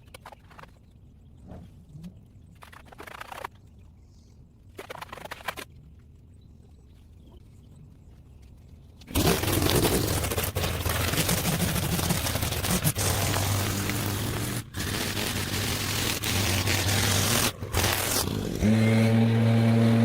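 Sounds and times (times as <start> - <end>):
small engine running: 9.1 - 20.0.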